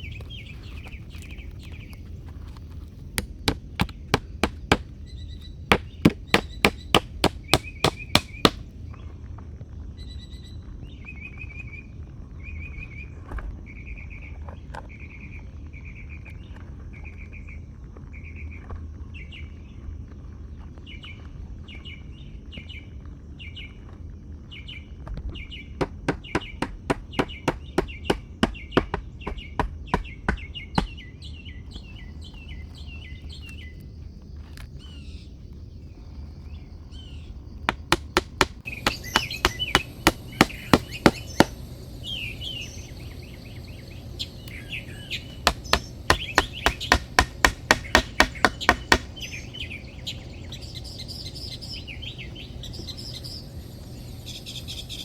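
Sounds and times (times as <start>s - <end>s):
small bird chirping: 0.0s - 8.6s, 31.7s - 55.0s
sharp knocks on wood or metal: 3.2s - 4.9s, 5.7s - 8.6s, 37.7s - 41.6s, 45.4s - 49.2s.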